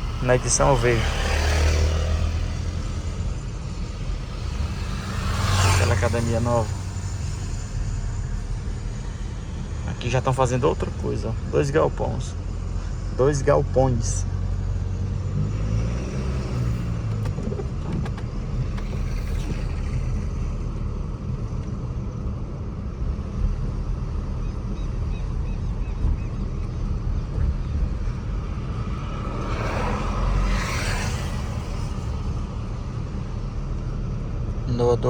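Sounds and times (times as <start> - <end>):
hissing rush: 0.0 - 13.1, 27.7 - 34.0
pickup engine and road rumble: 0.0 - 35.0.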